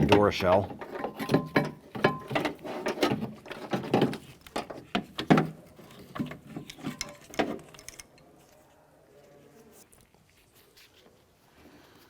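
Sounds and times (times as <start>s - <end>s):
clicks knocks and scrapes of metal: 0.0s - 8.6s.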